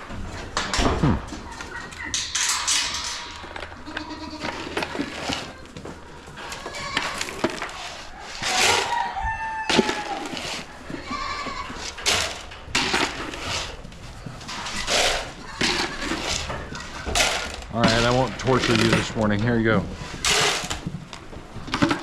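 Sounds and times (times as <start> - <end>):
rooster crowing: 8.2 - 10.4.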